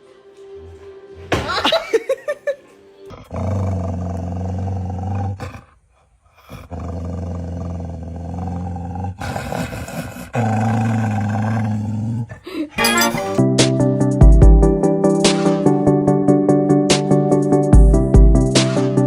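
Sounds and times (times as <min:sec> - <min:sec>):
low animal growl: 0:03.1 - 0:05.7, 0:06.3 - 0:12.7.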